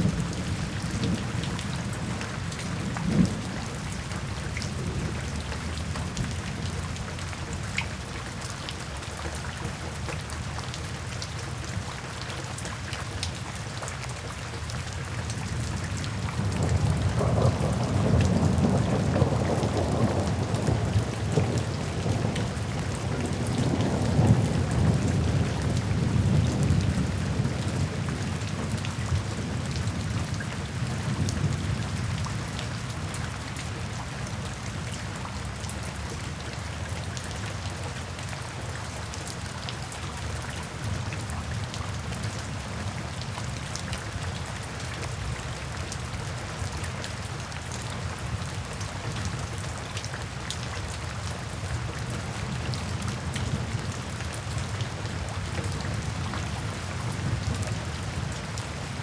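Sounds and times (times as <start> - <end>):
steady rain falling: 0.0 - 59.0
low roll of thunder: 16.1 - 30.2.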